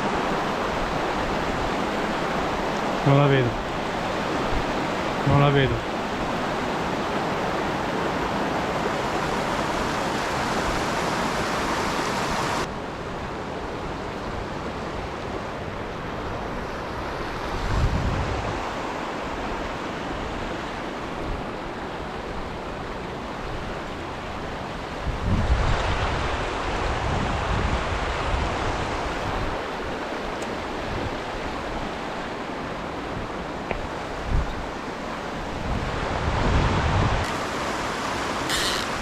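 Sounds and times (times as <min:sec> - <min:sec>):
mountain torrent rushing: 0:00.0 - 0:39.0
wind buffeting microphone: 0:35.4 - 0:39.0.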